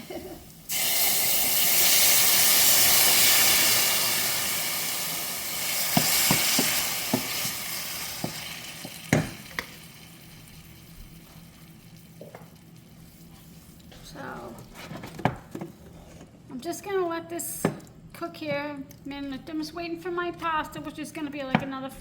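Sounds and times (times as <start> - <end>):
tomatoes sizzling in a frying pan: 0.0 - 14.5
spoon knocking against a pan: 6.0 - 7.6, 8.2 - 9.7.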